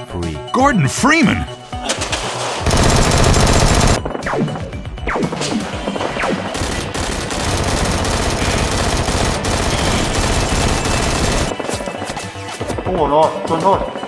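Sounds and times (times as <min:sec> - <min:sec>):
background music: 0:00.0 - 0:14.0
automatic gunfire effects: 0:01.6 - 0:04.2, 0:05.3 - 0:12.0.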